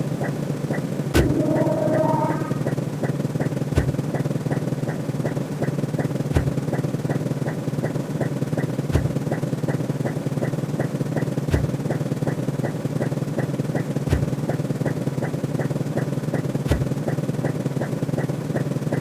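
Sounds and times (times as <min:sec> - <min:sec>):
electronic ticking: 0:00.2 - 0:05.0
steady low hum: 0:00.9 - 0:09.5.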